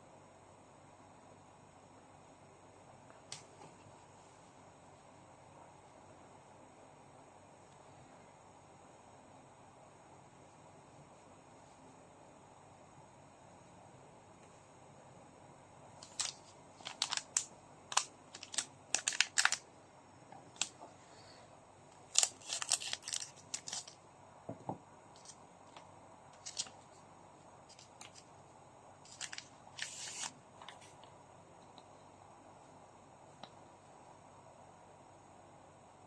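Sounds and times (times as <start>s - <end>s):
card packs crinkling and clicking: 16.0s - 19.6s, 22.1s - 24.0s, 25.2s - 25.8s, 26.4s - 26.8s, 27.7s - 28.3s, 29.1s - 31.0s.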